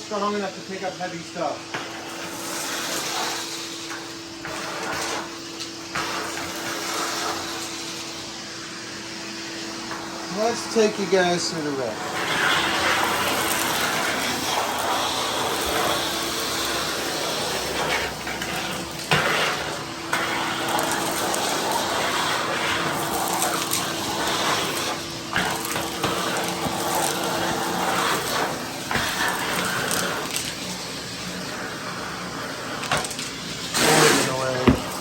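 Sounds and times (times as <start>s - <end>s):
shop vacuum running: 0.0s - 35.0s
debris clattering in hose: 10.3s - 35.0s.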